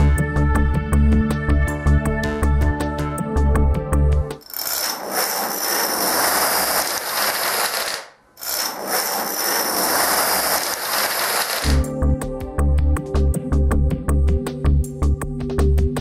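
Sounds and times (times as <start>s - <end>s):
dominoes toppling clatter: 4.4s - 11.9s.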